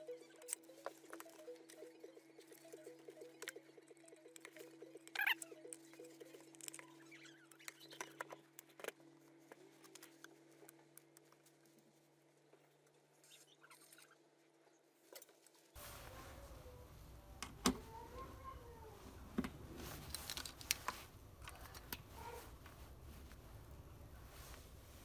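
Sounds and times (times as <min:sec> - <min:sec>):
low steady hum: 0:15.8 - 0:25.0
small parts clicking: 0:20.1 - 0:22.0.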